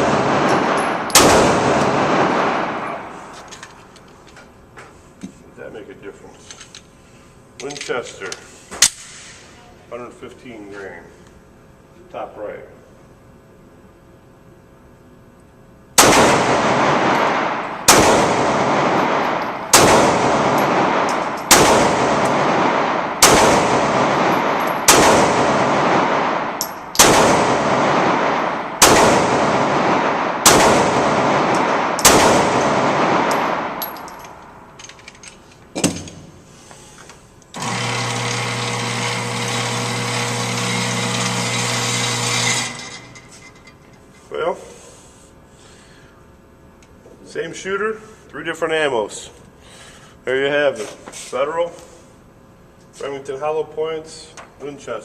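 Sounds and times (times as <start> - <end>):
pistol shots echoing indoors: 0.0 - 3.5, 16.0 - 34.7
steady mechanical hum: 0.0 - 55.0.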